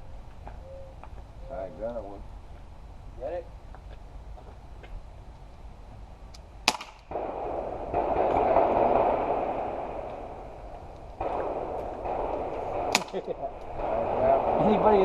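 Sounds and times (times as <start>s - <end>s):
air pistol shot: 6.7s - 10.5s, 11.1s - 15.0s.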